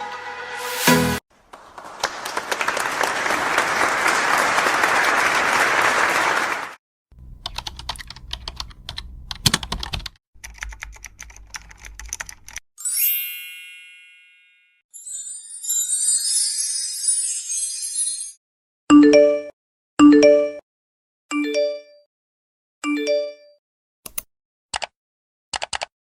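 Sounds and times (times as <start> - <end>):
computer keyboard typing: 7.2 - 12.6, 25.5 - 25.9.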